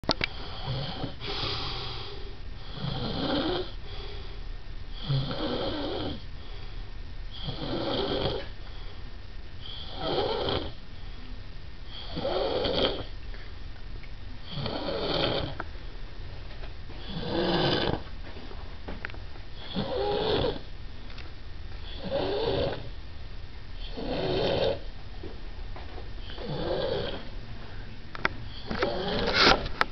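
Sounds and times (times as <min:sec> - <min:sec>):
man snoring: 0:00.4 - 0:02.0, 0:02.6 - 0:03.8, 0:05.0 - 0:06.2, 0:07.4 - 0:08.5, 0:09.8 - 0:10.8, 0:12.0 - 0:13.1, 0:14.5 - 0:15.6, 0:17.0 - 0:18.0, 0:19.7 - 0:20.7, 0:21.9 - 0:22.9, 0:23.8 - 0:24.8, 0:26.3 - 0:27.3, 0:28.8 - 0:29.3.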